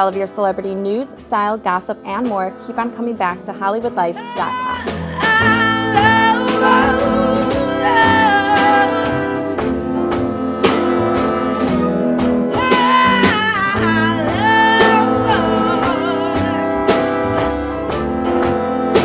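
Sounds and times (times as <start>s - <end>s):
band music with drums and guitar: 1.3s - 19.0s
person singing: 3.2s - 18.1s.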